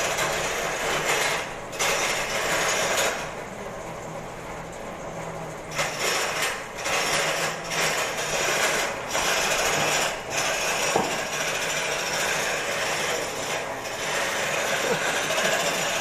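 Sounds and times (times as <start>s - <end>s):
lathe motor hum: 5.6s - 16.0s
rasping bursts: 5.8s - 16.0s.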